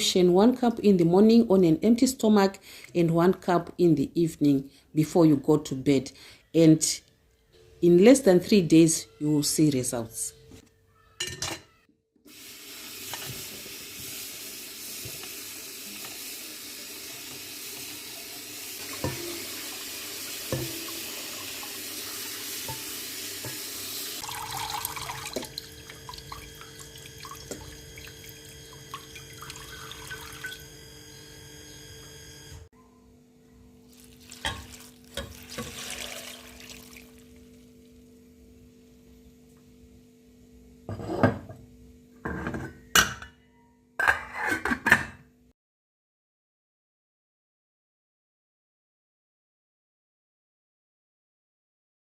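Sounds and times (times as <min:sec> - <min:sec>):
tap water running into sink: 0:12.3 - 0:30.7, 0:33.9 - 0:37.3.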